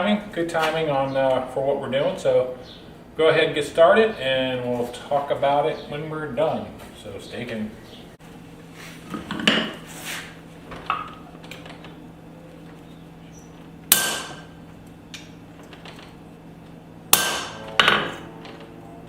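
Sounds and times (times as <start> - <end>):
steady low hum: 0.0 - 19.0
hammer striking steel: 13.9 - 14.6, 17.1 - 18.4.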